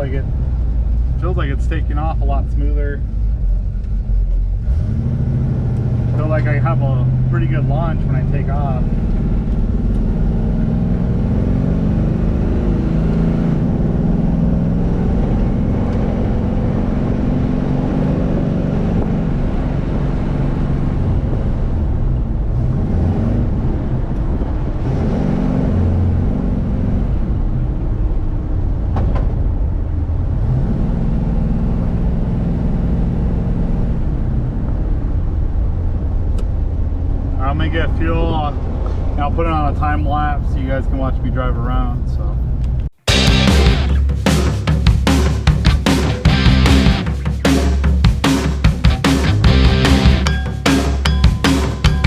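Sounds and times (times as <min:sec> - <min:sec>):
road noise: 0:00.0 - 0:52.0
car engine running: 0:05.8 - 0:22.5, 0:43.1 - 0:52.0.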